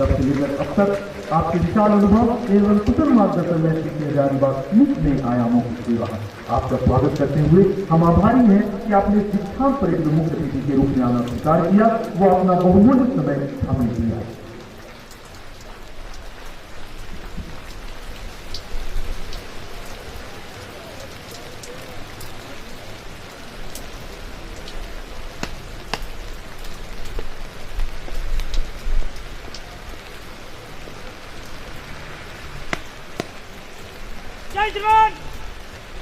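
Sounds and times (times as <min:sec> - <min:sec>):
steady rain falling: 0:00.0 - 0:36.0
drops striking close by: 0:32.7 - 0:33.5.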